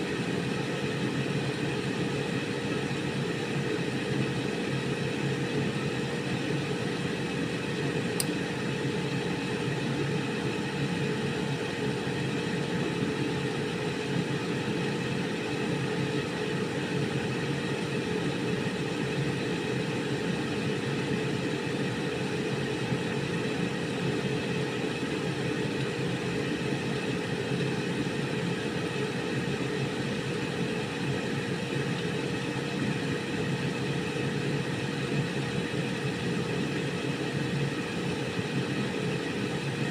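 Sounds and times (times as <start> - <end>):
air fryer fan whir: 0.0 - 39.9
faint tick: 8.2 - 8.4.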